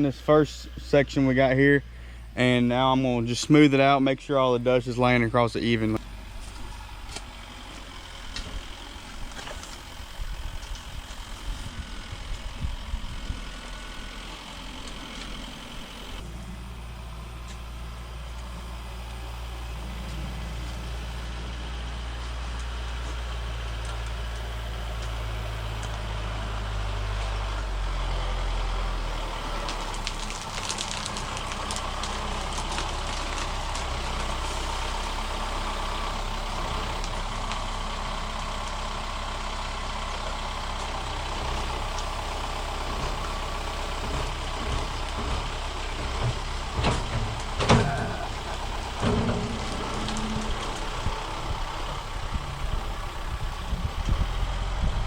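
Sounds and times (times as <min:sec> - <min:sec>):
vehicle engine idling: 0:00.0 - 0:55.0
scraping and knocking: 0:43.9 - 0:54.3.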